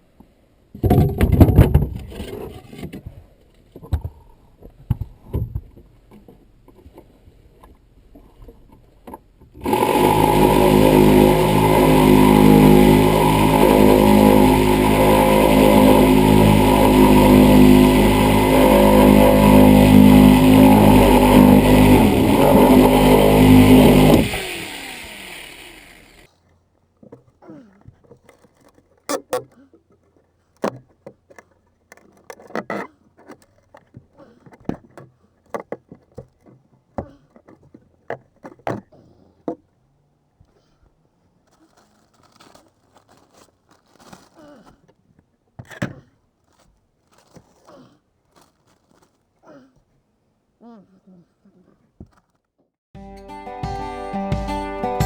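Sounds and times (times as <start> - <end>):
reciprocating saw motor running: 9.6 - 26.3.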